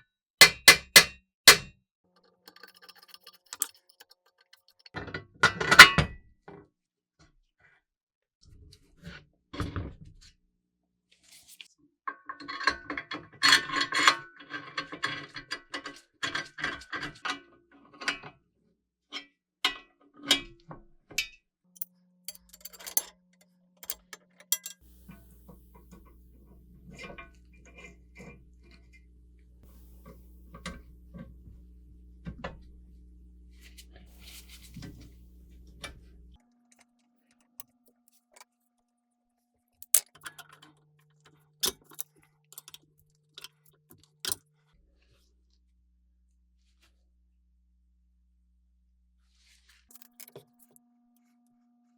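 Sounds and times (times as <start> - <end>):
metal parts clicking and rattling: 2.2 - 4.9, 21.8 - 24.9, 39.8 - 44.4, 49.9 - 50.8
steady low hum: 24.8 - 36.4.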